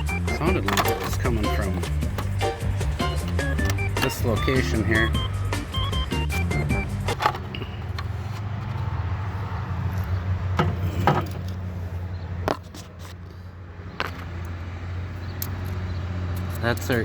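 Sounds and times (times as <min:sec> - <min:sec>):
low engine drone: 0:00.0 - 0:08.4
tools clanking on metal: 0:00.0 - 0:09.0, 0:10.0 - 0:11.6, 0:15.2 - 0:17.0.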